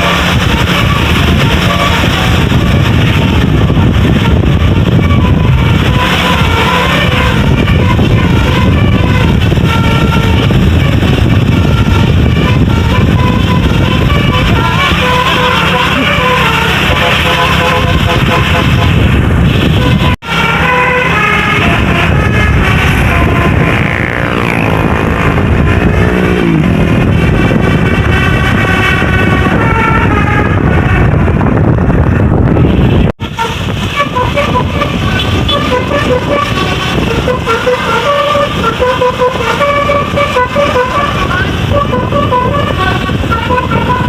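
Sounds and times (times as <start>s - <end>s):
bus engine: 0.0s - 44.0s
multi-tone bus horn tunes: 0.0s - 44.0s
road rumble: 0.0s - 44.0s.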